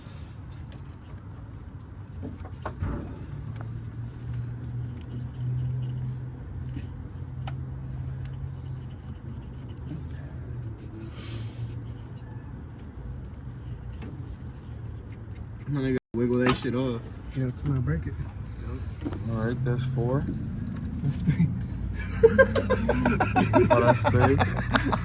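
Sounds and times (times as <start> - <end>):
vehicle engine humming: 0.0 - 25.0.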